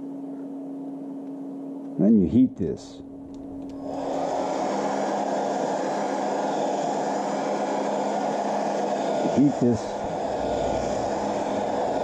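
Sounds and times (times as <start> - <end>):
hot-air blower whirring: 3.0 - 12.0.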